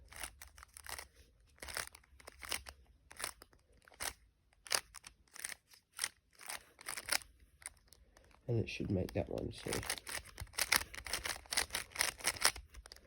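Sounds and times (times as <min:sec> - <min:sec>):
plastic puzzle cube clicking turns: 0:00.0 - 0:13.0.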